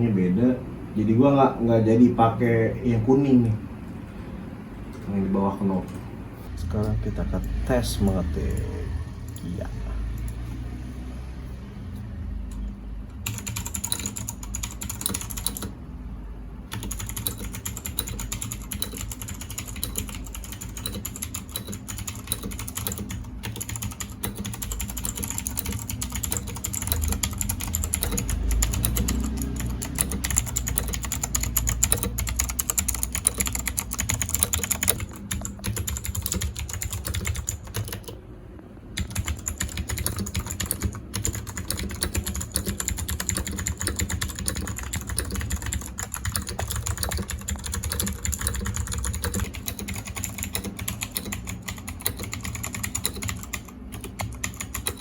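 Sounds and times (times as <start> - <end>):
mechanical keyboard typing: 13.2 - 15.8, 16.7 - 38.2, 39.0 - 55.0.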